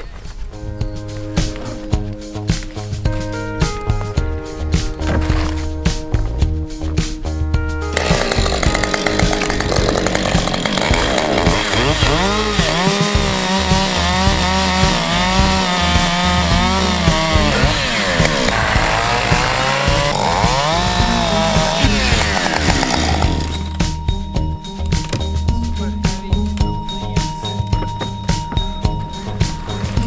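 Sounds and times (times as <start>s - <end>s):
chainsaw cutting wood: 5.1s - 5.5s, 7.9s - 23.7s.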